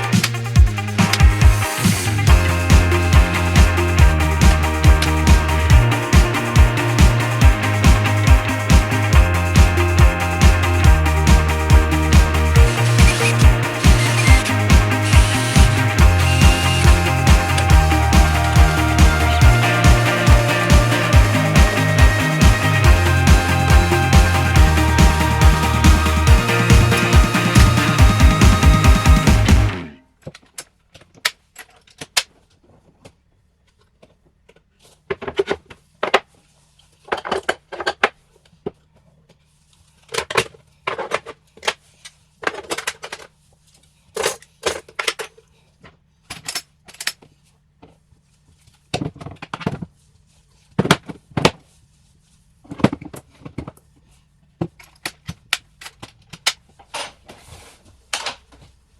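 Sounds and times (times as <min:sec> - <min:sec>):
background music: 0:00.0 - 0:30.0.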